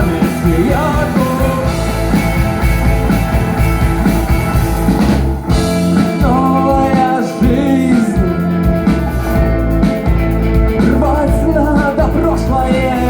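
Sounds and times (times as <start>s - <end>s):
person singing: 0.0s - 2.1s, 6.0s - 8.7s, 10.8s - 13.0s
full band playing: 0.0s - 13.0s.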